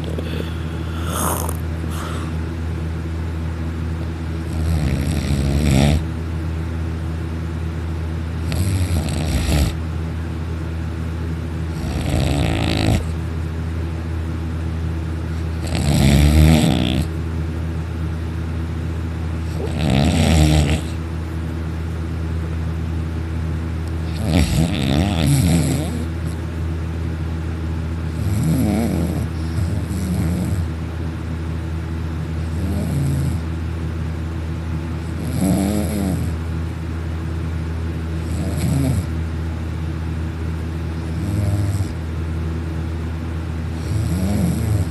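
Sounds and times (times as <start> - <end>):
man snoring heavily: 0.0 - 2.4, 4.4 - 6.1, 8.4 - 9.8, 11.7 - 13.2, 15.5 - 17.1, 19.4 - 21.0, 24.0 - 26.4, 28.1 - 30.7, 32.4 - 33.5, 35.1 - 36.4, 38.2 - 39.1, 41.0 - 42.0, 43.7 - 44.9
steady low hum: 0.0 - 44.9.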